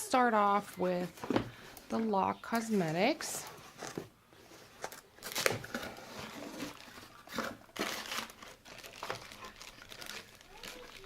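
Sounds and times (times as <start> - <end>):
packaging crinkling and rustling: 3.6 - 11.0.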